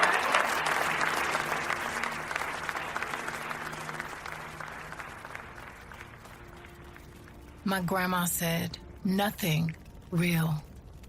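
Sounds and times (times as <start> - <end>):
small crowd applauding: 0.0 - 7.6.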